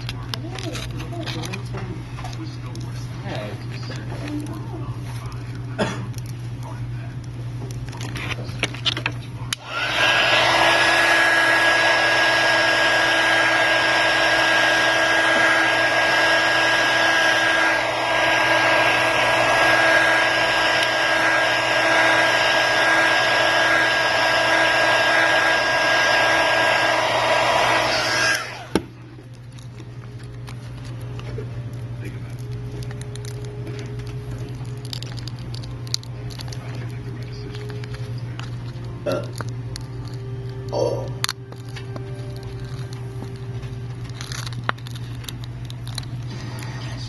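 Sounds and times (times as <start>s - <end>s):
hot-air tool blowing: 9.5s - 29.0s.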